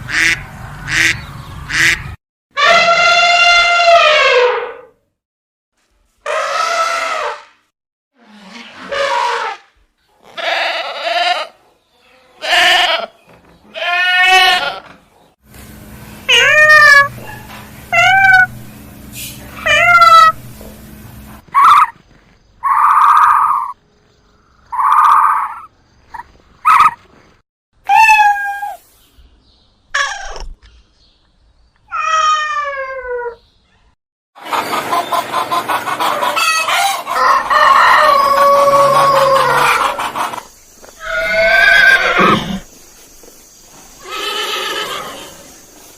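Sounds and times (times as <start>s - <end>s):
animal cries: 8.5s - 13.1s, 13.7s - 14.9s, 16.3s - 18.7s, 19.6s - 20.5s, 21.5s - 22.0s, 22.6s - 23.8s, 24.7s - 25.7s, 27.9s - 28.8s, 31.9s - 33.4s, 36.2s - 40.3s, 41.0s - 42.7s, 44.0s - 45.4s.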